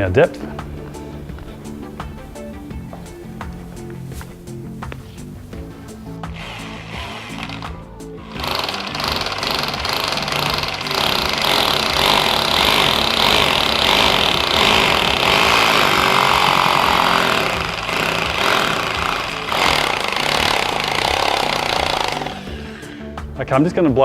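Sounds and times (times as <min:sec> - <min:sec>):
hammer drill boring into masonry: 0:06.3 - 0:23.2.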